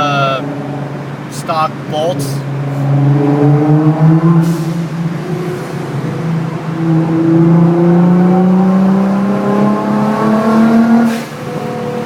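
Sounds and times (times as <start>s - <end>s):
blow-off valve whoosh: 4.3s - 5.9s.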